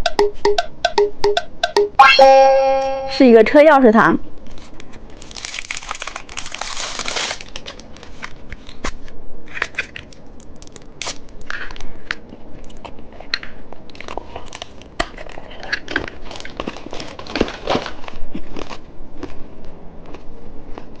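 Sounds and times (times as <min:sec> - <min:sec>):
plastic wrapper crinkling: 0:05.1 - 0:08.8, 0:10.1 - 0:11.2.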